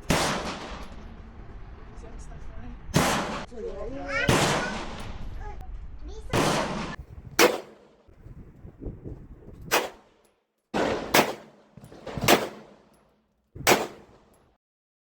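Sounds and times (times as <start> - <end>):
gunshots: 0.0 - 0.9, 3.0 - 3.5, 4.3 - 5.1, 6.3 - 8.0, 9.7 - 10.2, 10.8 - 13.0, 13.6 - 14.4.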